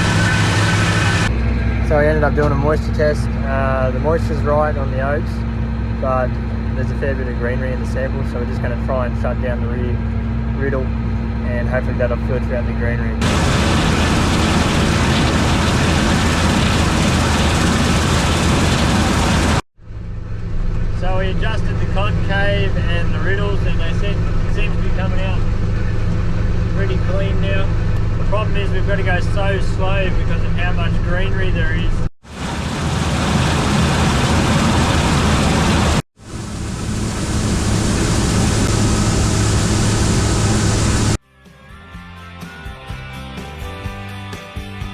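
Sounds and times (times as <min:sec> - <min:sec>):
combine harvester running: 0:00.0 - 0:30.4, 0:32.2 - 0:41.2
threshing gear rushing: 0:13.2 - 0:19.6.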